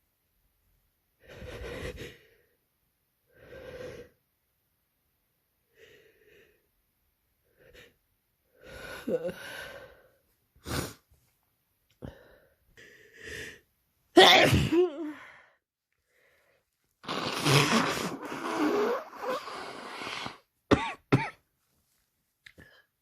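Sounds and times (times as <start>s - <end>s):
person sneezing: 14.2s - 15.1s.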